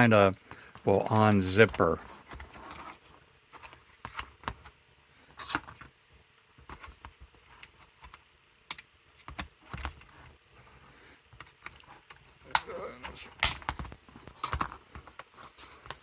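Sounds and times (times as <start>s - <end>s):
metal scraping on plastic: 1.6s - 4.3s.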